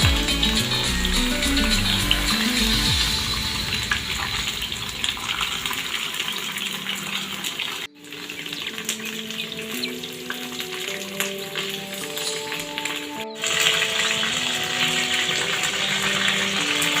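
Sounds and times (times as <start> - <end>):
background music with bass: 0.0 - 6.0
chips sizzling in hot oil: 4.9 - 17.0.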